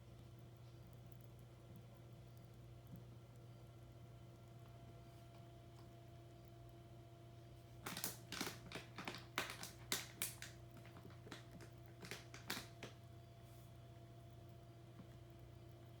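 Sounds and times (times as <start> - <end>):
hamster eating: 0.0 - 6.8
faint electrical hum: 0.0 - 16.0.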